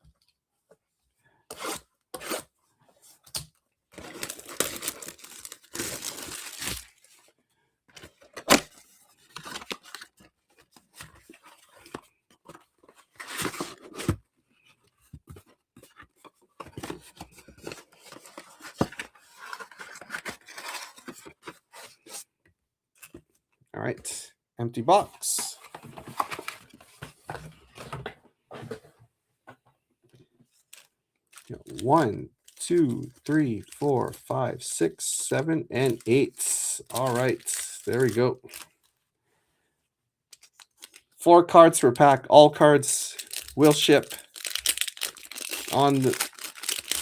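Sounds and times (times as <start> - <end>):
shrink wrap and cardboard tearing: 4.0 - 7.0, 36.8 - 38.7, 43.2 - 47.0
plastic crinkling: 4.0 - 7.2, 43.1 - 47.0.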